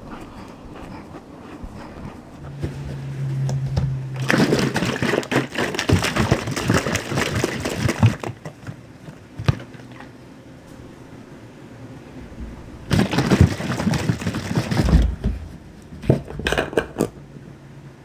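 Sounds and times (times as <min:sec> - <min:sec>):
crunching and chewing: 0:00.0 - 0:02.9, 0:04.2 - 0:10.2, 0:12.9 - 0:15.1.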